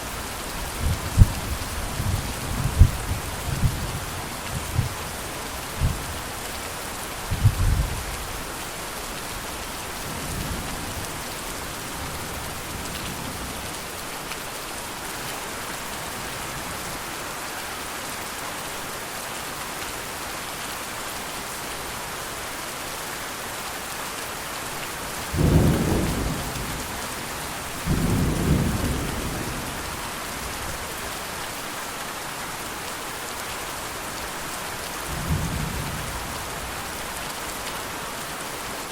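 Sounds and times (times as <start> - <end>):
rain pattering: 0.0 - 38.9
distant thunder rumbling: 25.3 - 29.8.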